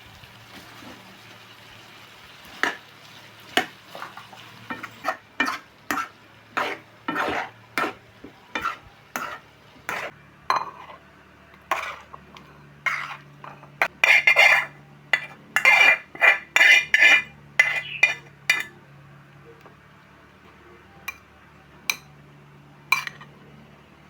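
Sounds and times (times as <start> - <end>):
metal spatula scraping a frying pan: 3.6 - 11.0, 11.6 - 18.7.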